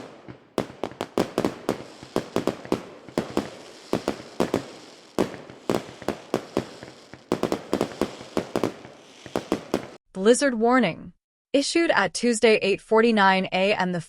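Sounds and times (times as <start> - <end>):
sharp echoing bangs: 0.0 - 10.0.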